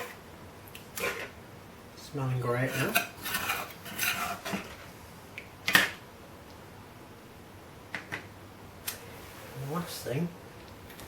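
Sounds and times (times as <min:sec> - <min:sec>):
spoon scraping a pan: 0:02.6 - 0:04.8.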